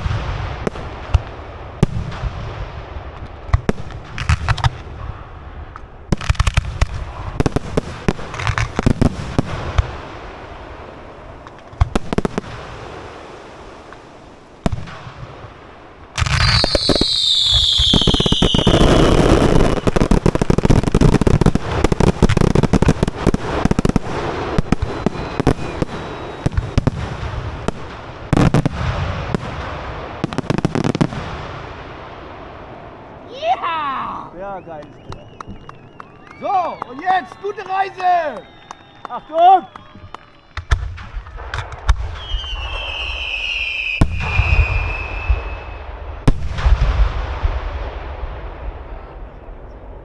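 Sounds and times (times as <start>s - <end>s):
fireworks bangs: 0.0s - 50.0s
fireworks crackling and booming: 0.0s - 50.0s
falling whistle: 16.4s - 20.1s, 24.8s - 26.8s, 33.6s - 40.8s, 42.2s - 45.9s.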